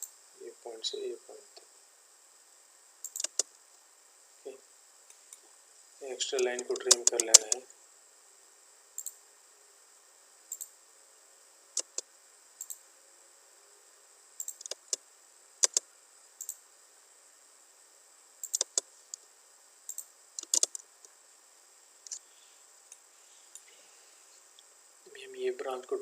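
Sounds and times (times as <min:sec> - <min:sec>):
faint steady hiss: 0:00.0 - 0:26.0
computer mouse clicking: 0:03.0 - 0:03.5, 0:06.4 - 0:07.6, 0:11.8 - 0:12.0, 0:14.4 - 0:15.0, 0:15.6 - 0:15.8, 0:18.4 - 0:18.8, 0:19.9 - 0:20.8.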